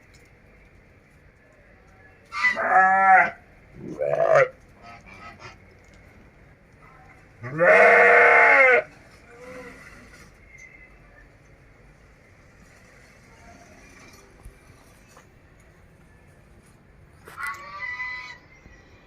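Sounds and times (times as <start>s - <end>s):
goats bleating: 2.4s - 4.5s, 7.4s - 9.9s.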